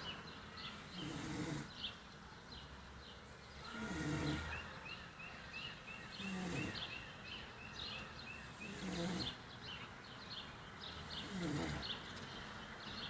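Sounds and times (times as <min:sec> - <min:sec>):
man snoring: 0:03.7 - 0:04.5, 0:06.2 - 0:06.8, 0:08.6 - 0:09.4, 0:11.2 - 0:11.8.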